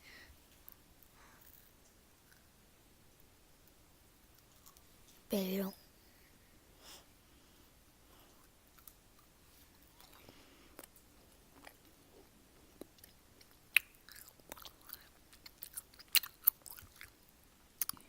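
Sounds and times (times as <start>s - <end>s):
chewing mouth clicks and smacks: 8.7s - 12.0s, 12.8s - 17.2s, 17.8s - 18.0s.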